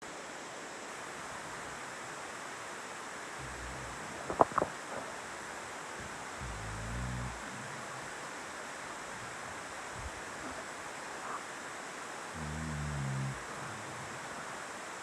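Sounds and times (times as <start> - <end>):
steady hiss: 0.0 - 15.0
dog snoring: 3.3 - 11.5, 12.3 - 14.7.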